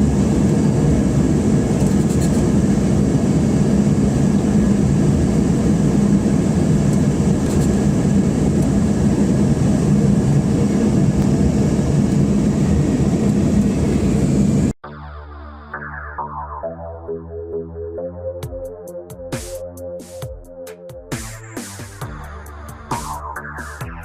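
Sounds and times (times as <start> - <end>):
airliner cabin engine rumble: 0.0 - 14.8
low hum: 0.0 - 18.4.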